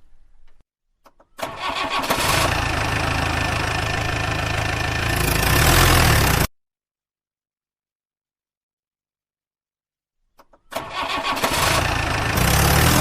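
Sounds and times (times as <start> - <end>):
vehicle engine running: 2.3 - 6.5.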